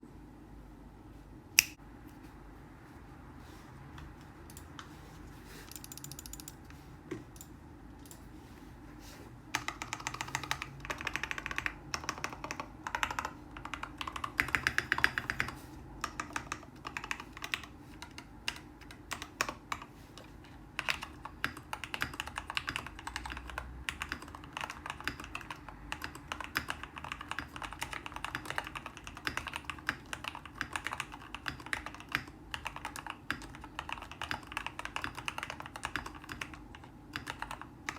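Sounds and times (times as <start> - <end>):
typing on mechanical keyboard: 5.7 - 6.6, 9.5 - 37.9.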